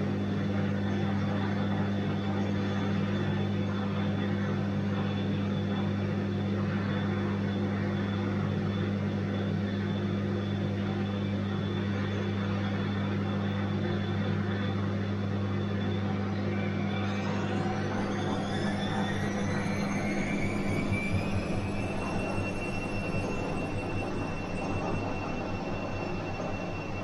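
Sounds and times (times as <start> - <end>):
washing machine humming: 0.0 - 27.0
rising drum whine: 13.4 - 27.0.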